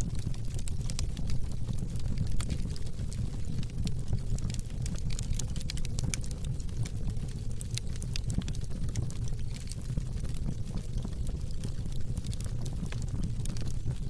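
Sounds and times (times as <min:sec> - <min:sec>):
fire crackling and popping: 0:00.0 - 0:14.0.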